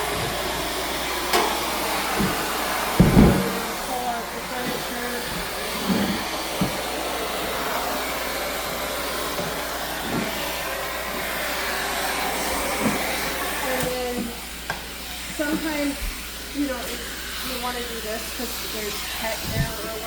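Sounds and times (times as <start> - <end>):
vacuum cleaner suction: 0.0 - 20.0
vacuum wand knocks: 3.0 - 3.7.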